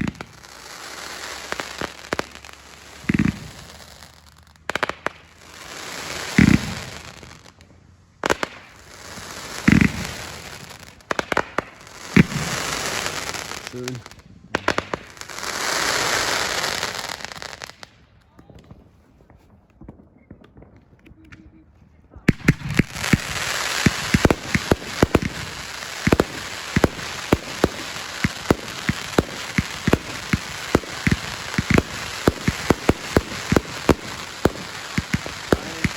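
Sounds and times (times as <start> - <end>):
firework booms: 0.0 - 7.4, 8.2 - 17.8, 22.2 - 35.9
hissing crackle: 22.3 - 35.9
firework launch thumps: 26.0 - 35.9.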